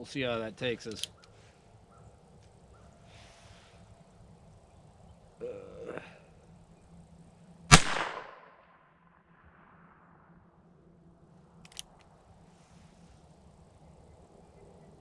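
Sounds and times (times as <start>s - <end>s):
sharp clicks: 0.8s - 1.4s, 11.6s - 12.1s
gunshot echo: 7.7s - 10.1s.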